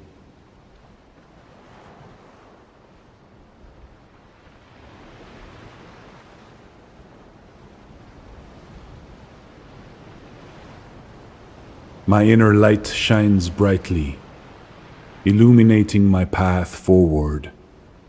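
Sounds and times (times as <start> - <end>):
ocean waves washing: 12.1 - 17.8.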